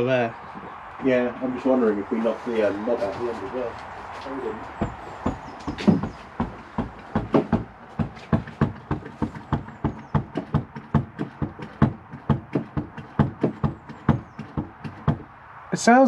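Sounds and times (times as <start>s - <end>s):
clutch pedal knocking: 4.8s - 15.3s.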